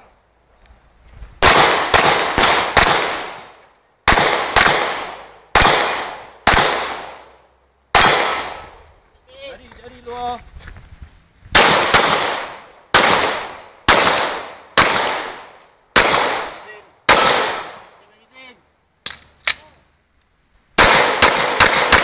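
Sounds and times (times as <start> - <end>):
pistol shots echoing: 1.4 - 8.7, 11.6 - 18.0, 20.8 - 22.0.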